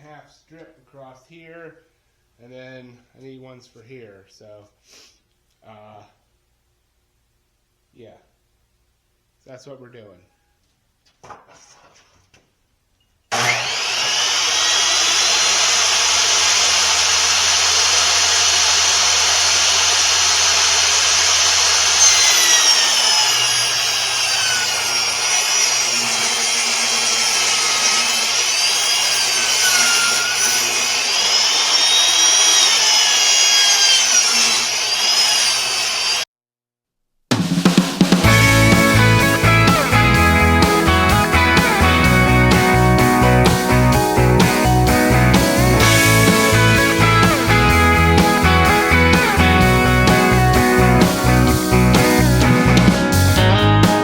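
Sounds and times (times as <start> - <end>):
electric power saw whining: 13.3 - 36.3, 38.2 - 53.3.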